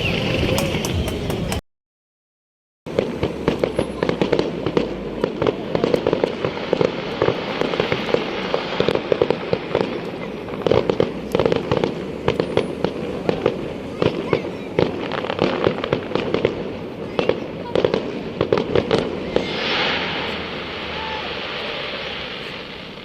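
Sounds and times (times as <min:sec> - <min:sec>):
fireworks crackling and banging: 0:00.0 - 0:01.6, 0:02.9 - 0:23.0.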